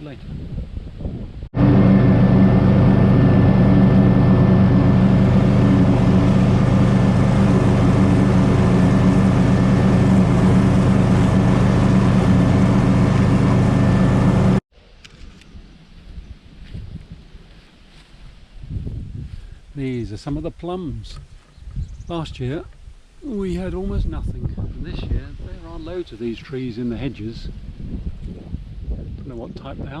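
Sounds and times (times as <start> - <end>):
engine running steadily: 1.6 - 14.6.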